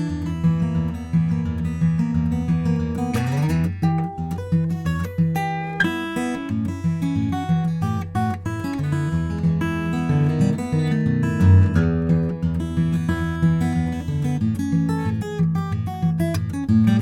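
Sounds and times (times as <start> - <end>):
acoustic guitar picking and strumming: 0.0 - 17.0.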